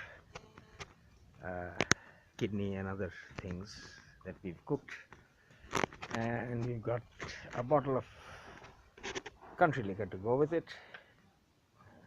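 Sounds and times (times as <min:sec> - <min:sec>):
man speaking: 0:01.4 - 0:01.8, 0:02.4 - 0:05.1, 0:06.1 - 0:08.1, 0:09.6 - 0:10.9
faint clicks: 0:01.7 - 0:02.5.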